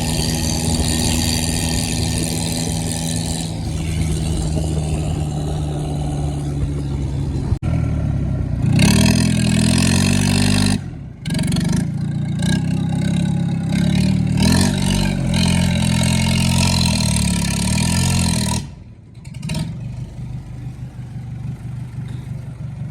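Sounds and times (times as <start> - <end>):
tractor diesel engine revving: 0.0 - 22.9.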